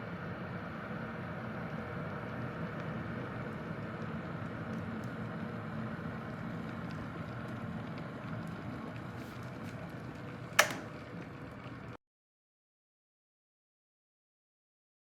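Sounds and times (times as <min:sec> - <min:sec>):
kettle heating water: 0:00.0 - 0:12.0
kettle sharp click: 0:10.5 - 0:11.1.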